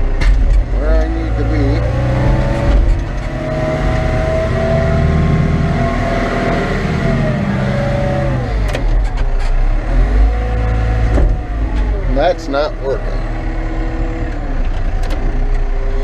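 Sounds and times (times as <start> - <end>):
diesel engine revving: 0.0 - 16.0.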